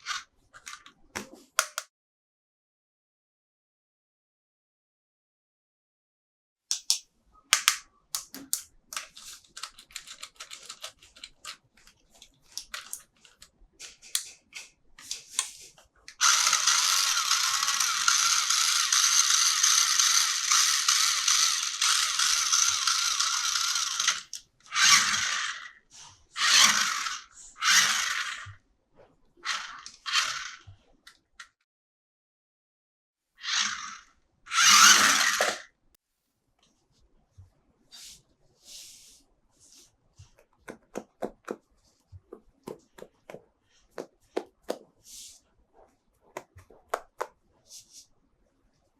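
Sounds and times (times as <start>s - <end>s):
plastic toy parts clicking: 1.6s - 1.9s, 6.7s - 25.3s.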